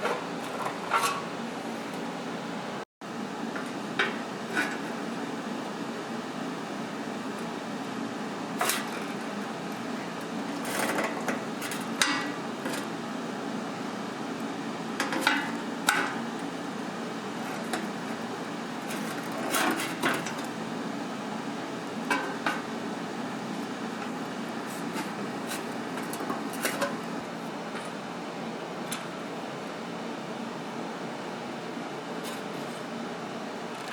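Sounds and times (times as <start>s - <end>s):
steady background hum: 0.0s - 33.9s.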